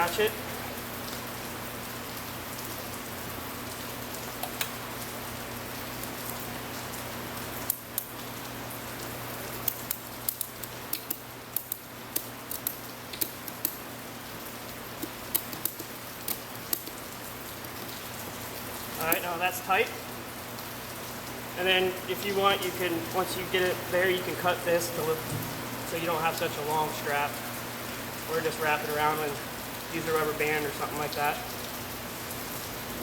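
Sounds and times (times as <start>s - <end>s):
ratchet strap clicking: 9.6s - 13.8s, 15.0s - 17.0s
steady hiss: 18.9s - 20.3s, 21.3s - 33.0s.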